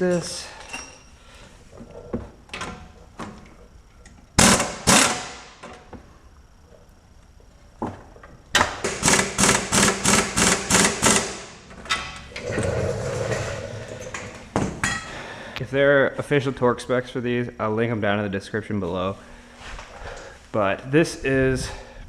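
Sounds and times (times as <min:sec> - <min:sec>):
impact wrench hammering on a nut: 0:08.8 - 0:11.5.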